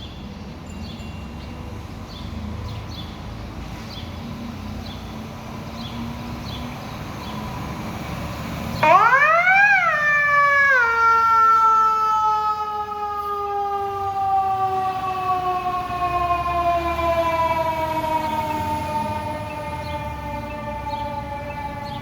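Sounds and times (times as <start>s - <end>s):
fire truck electronic siren: 8.8s - 22.0s.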